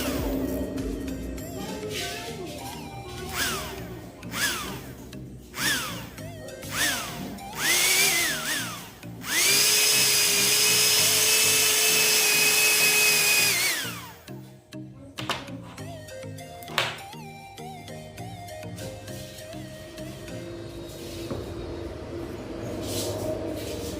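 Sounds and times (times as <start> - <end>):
background music: 0.0 - 23.9
small electric motor whining: 3.1 - 14.4.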